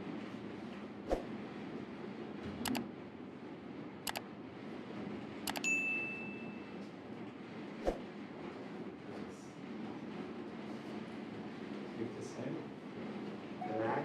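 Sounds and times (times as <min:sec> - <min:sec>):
sharp double clicks: 0:05.5 - 0:05.7
short ringing tone: 0:05.5 - 0:06.8.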